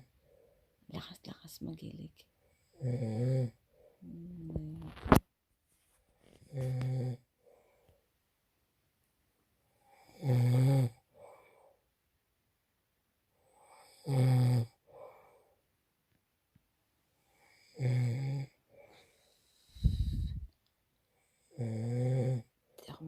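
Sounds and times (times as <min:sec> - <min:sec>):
soft breath: 0:00.1 - 0:00.8, 0:03.6 - 0:04.5, 0:07.4 - 0:08.2, 0:11.1 - 0:11.9, 0:14.8 - 0:15.7, 0:18.7 - 0:21.4
man snoring loudly: 0:02.7 - 0:03.6, 0:06.5 - 0:07.2, 0:09.9 - 0:11.0, 0:13.7 - 0:14.8, 0:17.3 - 0:18.6, 0:21.4 - 0:22.5.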